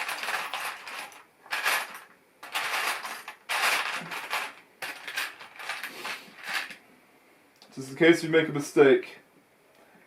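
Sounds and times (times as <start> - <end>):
plastic toy bricks rattling: 0.0 - 6.8.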